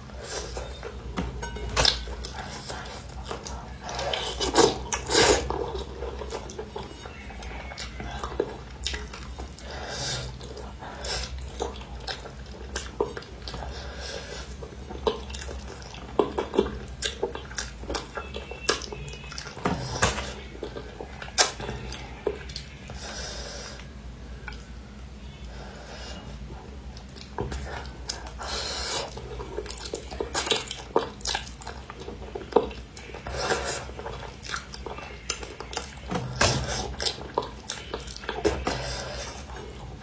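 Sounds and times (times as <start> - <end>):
wet mouth eating sounds: 0.2 - 24.8, 26.1 - 40.0
utensils knocking against dishes: 0.7 - 2.2.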